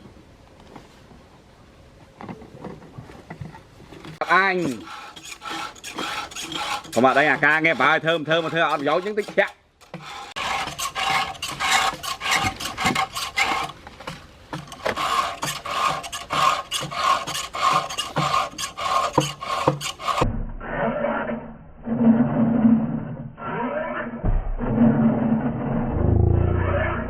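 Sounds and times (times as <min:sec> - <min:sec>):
rhythmic rasping strokes: 0:04.2 - 0:13.8, 0:14.6 - 0:20.3.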